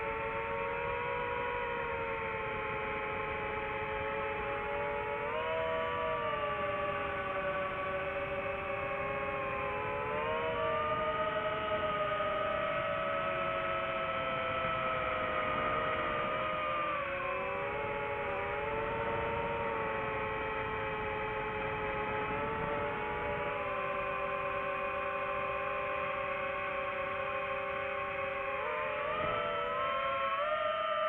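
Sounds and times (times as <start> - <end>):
quadcopter motors whining: 0.0 - 31.0.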